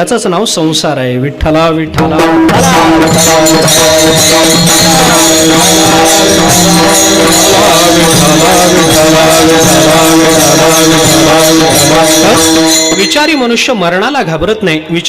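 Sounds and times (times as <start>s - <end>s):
held drone note: 2.3s - 13.8s
hand cymbals clashing: 2.3s - 14.4s
voices chanting: 2.6s - 13.4s.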